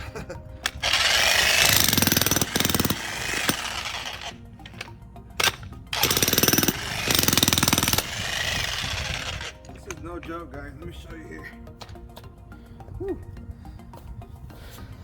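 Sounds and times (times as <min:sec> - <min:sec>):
jackhammer hammering into ground: 0:00.6 - 0:04.8, 0:05.4 - 0:09.6.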